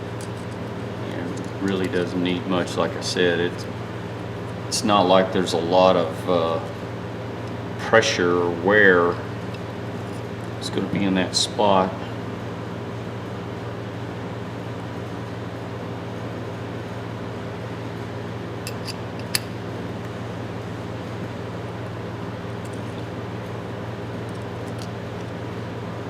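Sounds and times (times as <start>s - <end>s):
room machinery hum: 0.0s - 26.0s
light metal clicks: 24.2s - 25.4s.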